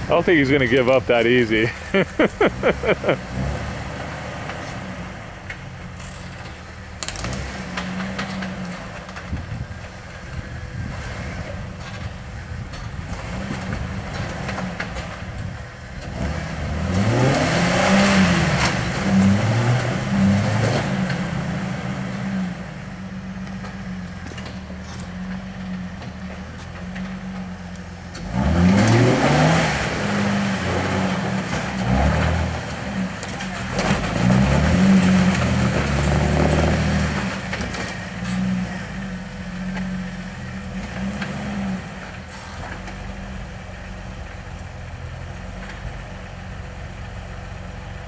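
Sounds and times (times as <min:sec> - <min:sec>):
engine running at low revs: 0:00.0 - 0:48.0
engine revving hard: 0:02.4 - 0:05.1, 0:16.0 - 0:22.5, 0:28.2 - 0:39.0.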